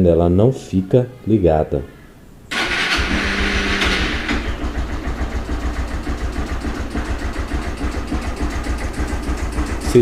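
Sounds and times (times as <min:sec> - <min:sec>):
electric starter whirring: 0:02.5 - 0:10.0
motorcycle engine idling: 0:02.6 - 0:10.0.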